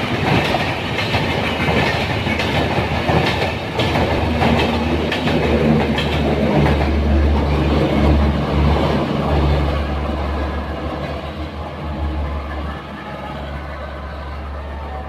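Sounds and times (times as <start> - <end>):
train wheels clicking over rail joints: 0.0 - 9.8
train rumble: 0.0 - 15.0.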